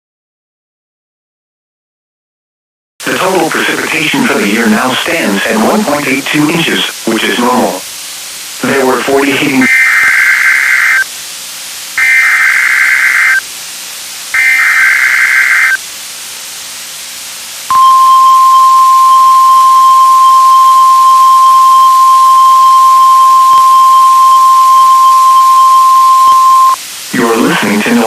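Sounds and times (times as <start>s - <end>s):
radio hiss: 3.0s - 17.6s, 23.9s - 28.0s
steady warning alarm tone: 9.6s - 11.1s, 12.0s - 13.4s, 14.4s - 15.8s, 17.7s - 26.8s
digital header bursts: 12.0s - 13.4s, 14.4s - 15.8s.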